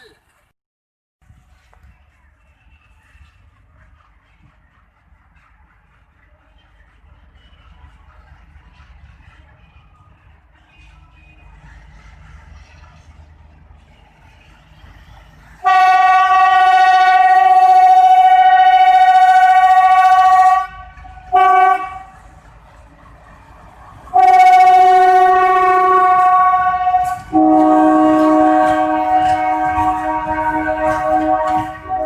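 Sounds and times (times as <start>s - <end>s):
low multi-tone horn: 15.6s - 22.1s, 24.1s - 32.0s
locomotive air horn blasts: 15.6s - 22.2s, 24.1s - 32.0s.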